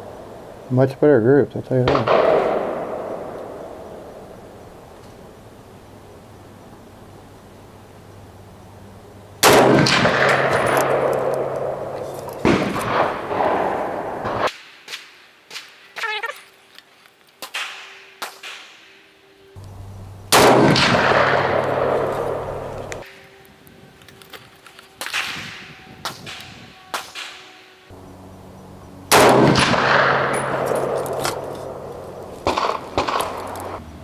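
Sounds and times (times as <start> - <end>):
rifle shots: 1.8 - 4.9, 9.4 - 15.7, 17.4 - 18.9, 20.3 - 23.0, 29.1 - 33.8.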